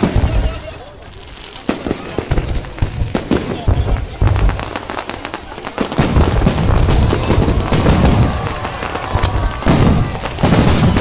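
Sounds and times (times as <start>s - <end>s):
fireworks bangs and crackles: 0.0s - 11.0s
fireworks whistles: 0.0s - 11.0s.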